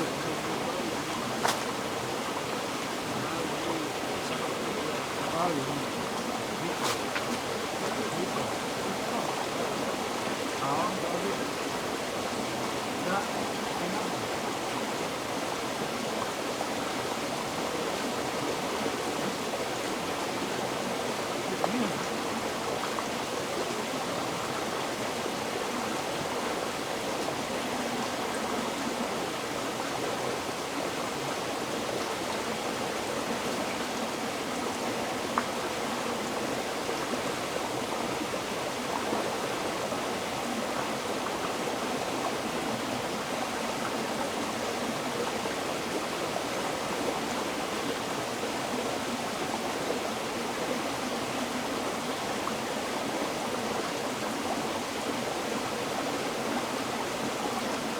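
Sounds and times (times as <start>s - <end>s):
small water splashes: 0.0s - 14.7s
river water flowing over rocks: 0.0s - 57.9s.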